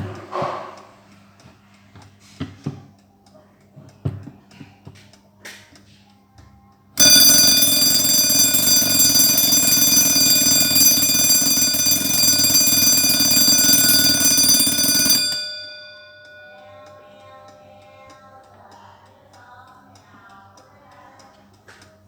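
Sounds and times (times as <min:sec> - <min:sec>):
mechanical alarm clock ringing: 0:07.0 - 0:17.6.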